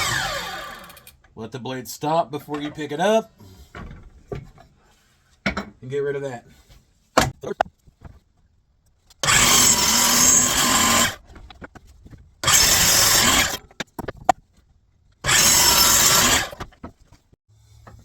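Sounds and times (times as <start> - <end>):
power miter saw running: 0.0 - 1.1, 9.2 - 11.2, 12.4 - 13.6, 15.3 - 16.6.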